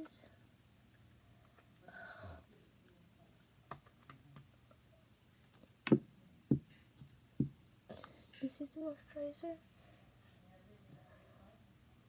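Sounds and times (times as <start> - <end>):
items knocking on table: 5.8 - 6.8.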